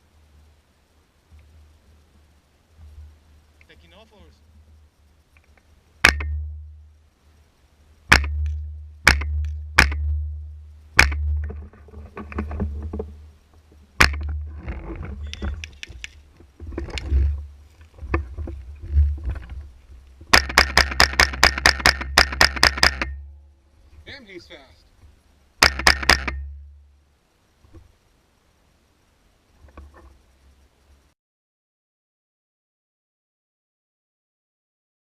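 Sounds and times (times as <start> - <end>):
rifle shots: 6.0 - 6.6, 8.1 - 10.4, 20.3 - 23.2, 25.6 - 26.5.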